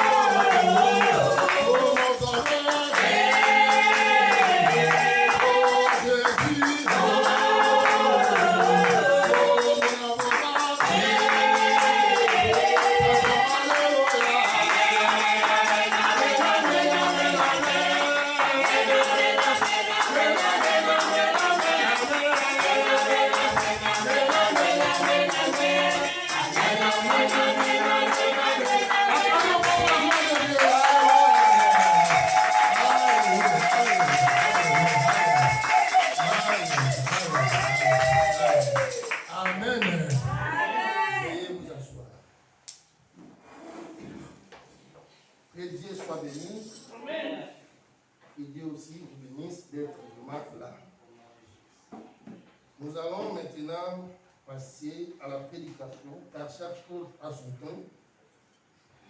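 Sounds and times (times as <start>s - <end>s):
shaken percussion beat: 0.0s - 40.5s, 45.8s - 46.9s
person singing worship song: 0.0s - 41.6s.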